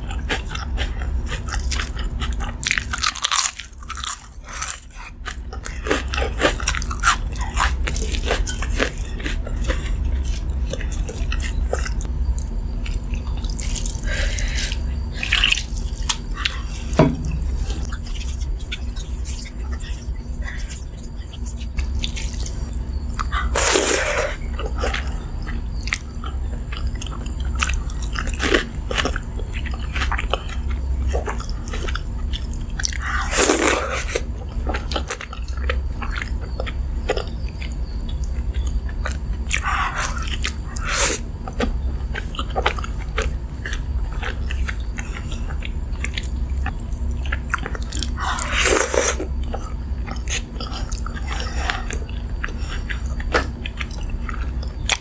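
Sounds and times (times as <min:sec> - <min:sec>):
low steady hum: 0:00.0 - 0:55.0
wet chewing: 0:00.0 - 0:55.0
crunching bites of fried food: 0:00.2 - 0:12.0.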